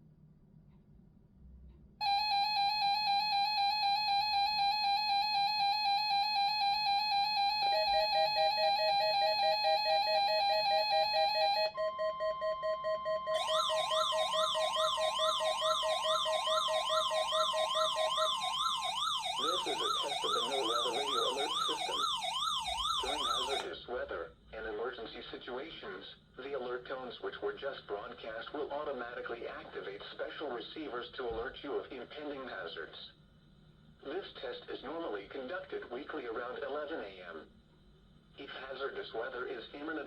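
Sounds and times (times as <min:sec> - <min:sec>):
siren-like sweeping tone: 0:13.3 - 0:23.7
electronic alert tones: 0:13.4 - 0:23.6.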